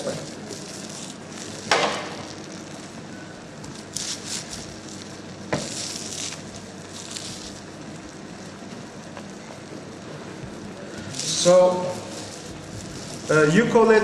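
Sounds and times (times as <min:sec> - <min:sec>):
short rustling bursts: 0:11.0 - 0:14.0.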